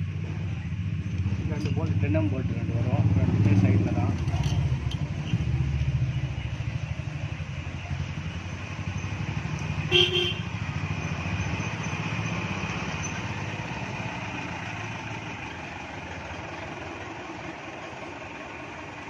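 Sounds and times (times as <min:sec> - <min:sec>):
motorcycle engine running: 0:00.0 - 0:11.2.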